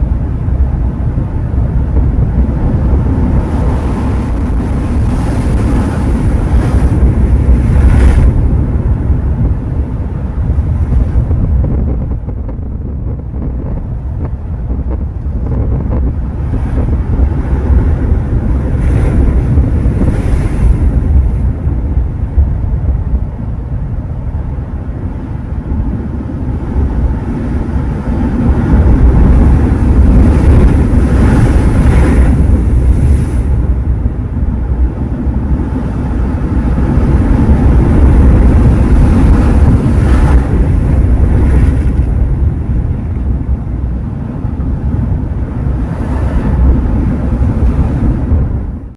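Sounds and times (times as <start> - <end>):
sea waves breaking: 0.0 - 48.9
wind rumbling on microphone: 0.0 - 48.9.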